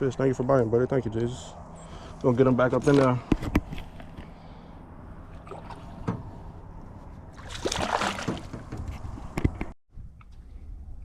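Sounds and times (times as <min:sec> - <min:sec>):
water splashing: 0:05.3 - 0:06.2, 0:07.3 - 0:08.8
sharp handling knocks: 0:07.9 - 0:09.7.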